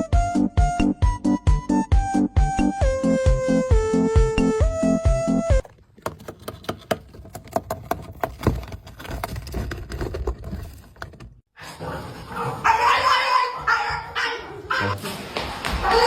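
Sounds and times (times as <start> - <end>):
quick clicks and knocks: 5.6 - 11.4.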